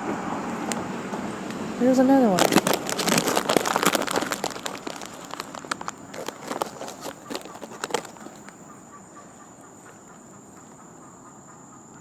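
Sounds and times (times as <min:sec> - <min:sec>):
insects droning: 0:00.0 - 0:12.0
sharp crackling clicks: 0:02.4 - 0:08.6.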